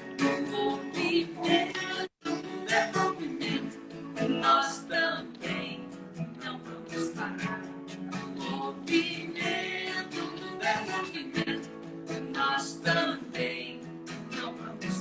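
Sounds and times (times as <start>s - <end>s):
person singing: 0.0s - 15.0s
strummed acoustic guitar: 0.0s - 15.0s.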